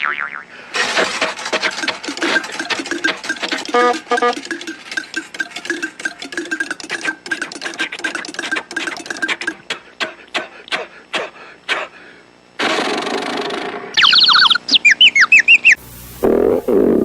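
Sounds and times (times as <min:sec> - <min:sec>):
fast sharp clicks: 0:00.7 - 0:09.8
short burst of hiss: 0:15.8 - 0:17.0.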